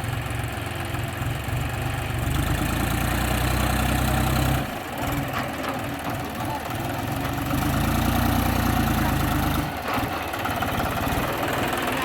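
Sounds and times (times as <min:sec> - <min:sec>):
heavy diesel engine droning: 0:00.0 - 0:12.0.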